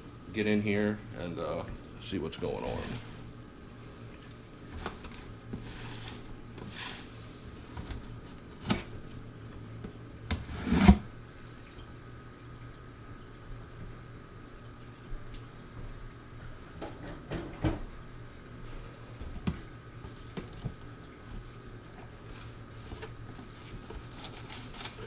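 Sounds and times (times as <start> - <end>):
cardboard and packing peanuts rustling: 20.1 - 25.0.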